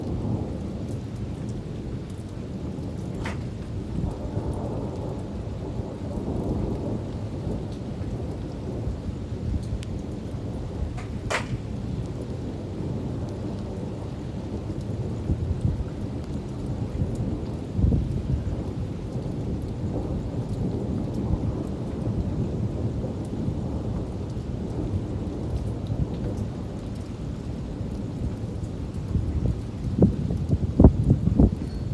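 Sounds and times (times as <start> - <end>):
thunder rumbling: 0.0 - 16.2
raindrop ticks: 0.0 - 31.9
steady rain: 0.0 - 31.9.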